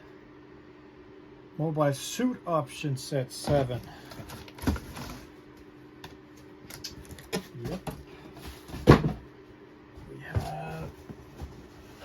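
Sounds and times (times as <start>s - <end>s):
cardboard boxes tapping and rustling: 7.6s - 9.3s, 10.0s - 12.0s.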